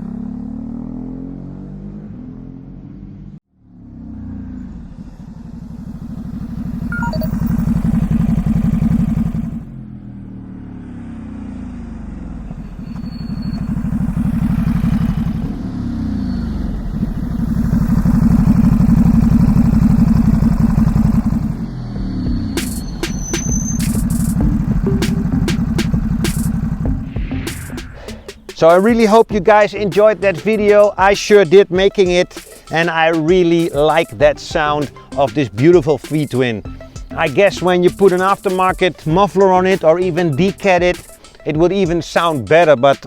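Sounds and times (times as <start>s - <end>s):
motorcycle engine accelerating: 0.0s - 42.8s.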